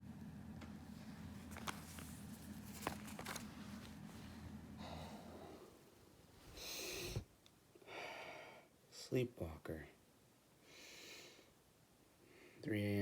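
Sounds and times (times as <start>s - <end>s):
low steady hum: 0.0s - 13.0s
heavy breathing: 4.2s - 8.7s.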